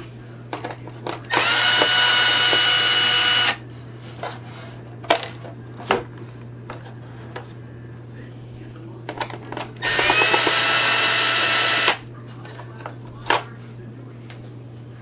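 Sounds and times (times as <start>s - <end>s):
cordless drill whining: 1.3s - 3.6s, 9.8s - 12.0s.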